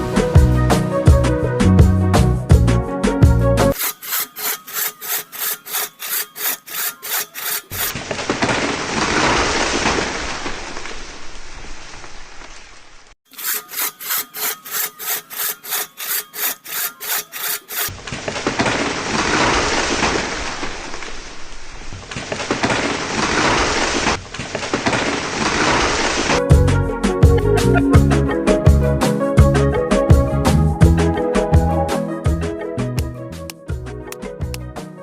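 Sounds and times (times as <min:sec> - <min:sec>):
rhythmic hand sawing: 0:03.7 - 0:07.9, 0:13.2 - 0:17.9.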